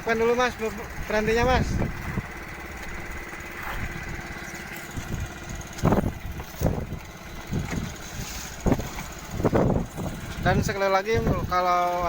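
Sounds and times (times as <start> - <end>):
boat engine running: 0.0 - 12.0.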